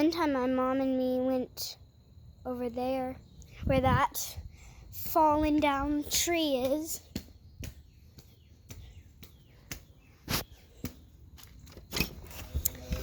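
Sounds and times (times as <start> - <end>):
faint bird chirps: 6.4 - 12.2.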